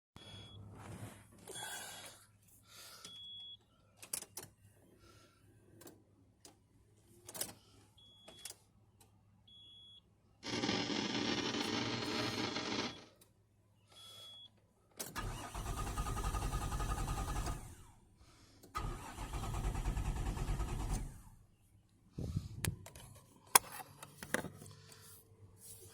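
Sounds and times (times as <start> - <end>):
car engine cranking: 10.4 - 13.0, 15.1 - 17.9, 18.7 - 21.4.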